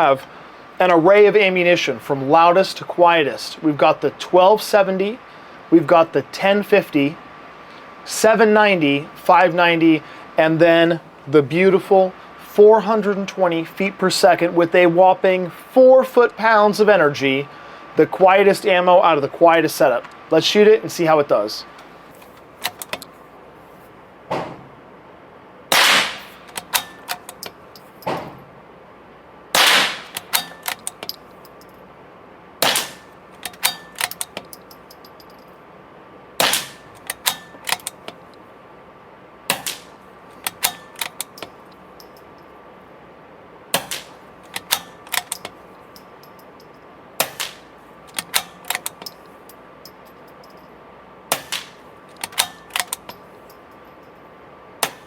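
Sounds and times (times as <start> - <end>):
rifle bolt clicks: 22.2 - 23.1, 25.8 - 28.2, 29.6 - 31.6, 32.6 - 35.2, 36.4 - 38.2, 39.5 - 42.1, 43.8 - 46.4, 47.2 - 49.2, 51.3 - 53.2
suppressed rifle shots: 25.7 - 27.2, 29.6 - 30.9, 32.6 - 34.1, 36.4 - 37.8, 39.5 - 41.3.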